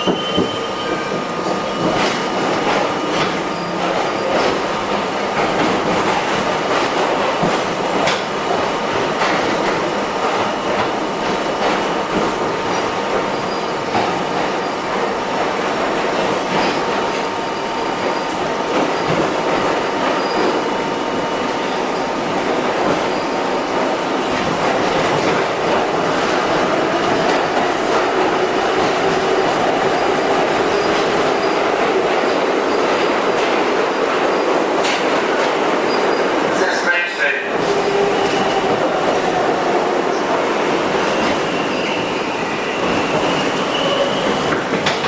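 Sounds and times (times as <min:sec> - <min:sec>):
rail-joint clicks: 0:00.0 - 0:08.4, 0:34.8 - 0:36.2, 0:42.8 - 0:45.0
steel wheels rushing on rails: 0:00.0 - 0:45.0
high wheel squeal: 0:41.1 - 0:44.5.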